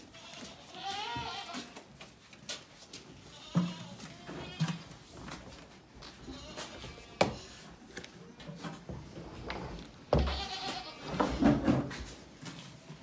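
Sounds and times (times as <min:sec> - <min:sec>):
goats bleating: 0:00.0 - 0:01.8, 0:06.0 - 0:07.6, 0:10.1 - 0:11.4.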